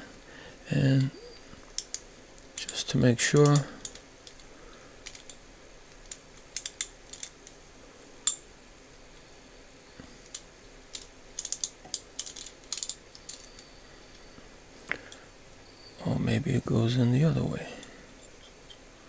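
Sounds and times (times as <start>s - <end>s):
small metal parts clicking: 1.0s - 8.5s, 10.1s - 15.3s.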